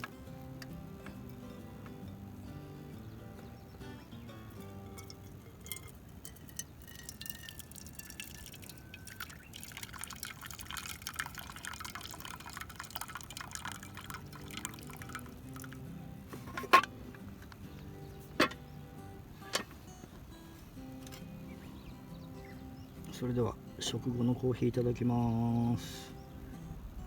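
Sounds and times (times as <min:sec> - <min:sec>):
coffee trickling into a cup: 0:04.9 - 0:16.0.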